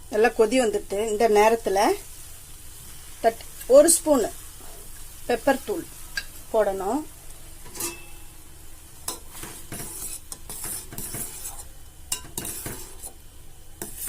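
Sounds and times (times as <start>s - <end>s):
spoon clinking against a pan: 7.7s - 8.3s, 12.1s - 12.9s.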